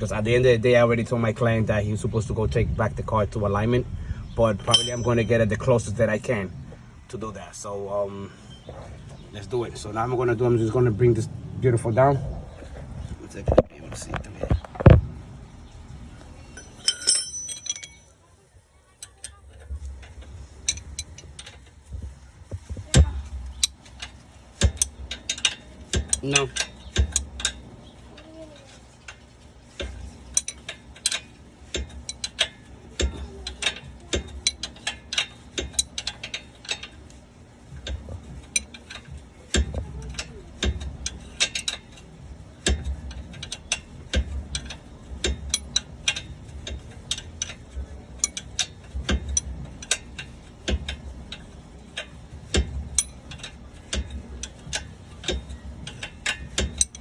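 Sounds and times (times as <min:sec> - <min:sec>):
metallic knocks and clinks: 0:04.6 - 0:05.6, 0:16.5 - 0:18.2, 0:37.8 - 0:57.0
ratchet wrench clicking: 0:16.6 - 0:18.1, 0:23.2 - 0:57.0.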